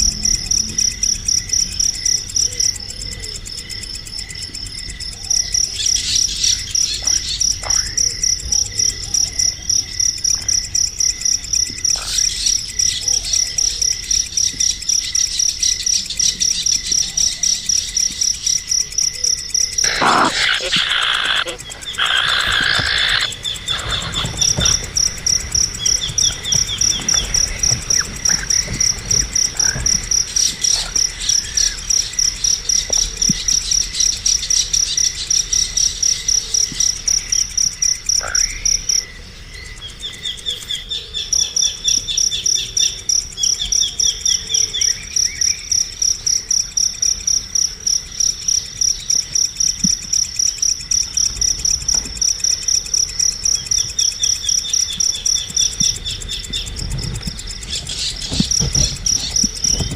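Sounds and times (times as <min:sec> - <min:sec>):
insect chirping: 0:00.0 - 0:59.9
trilled bird chirps: 0:19.8 - 0:31.8.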